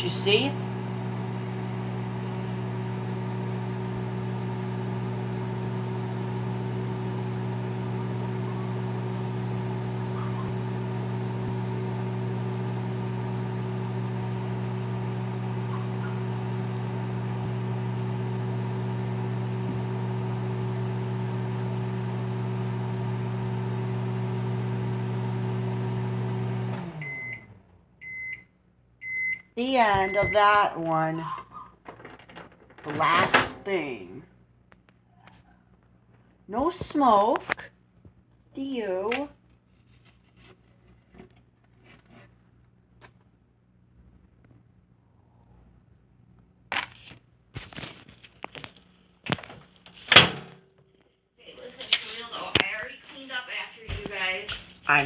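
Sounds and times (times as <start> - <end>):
microwave oven humming: 0.0 - 34.6.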